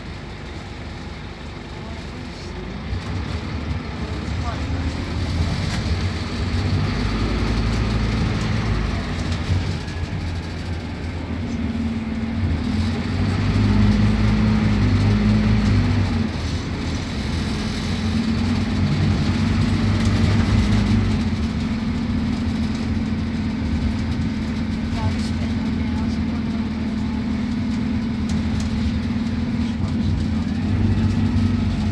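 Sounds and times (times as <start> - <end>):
bus diesel engine running: 0.0 - 31.9.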